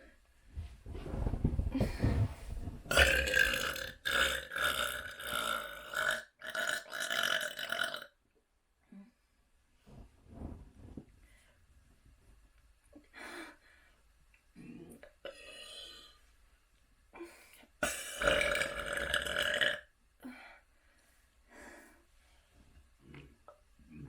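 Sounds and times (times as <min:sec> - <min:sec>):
person burping: 0:02.9 - 0:08.1, 0:17.8 - 0:19.9.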